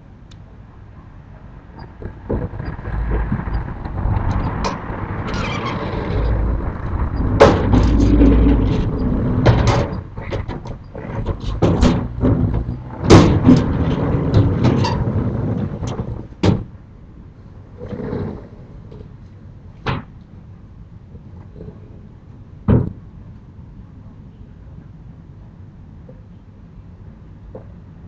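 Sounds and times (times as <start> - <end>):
shutters rumbling along rails: 0.7 - 23.5
shutters knocking and banging: 1.8 - 16.8.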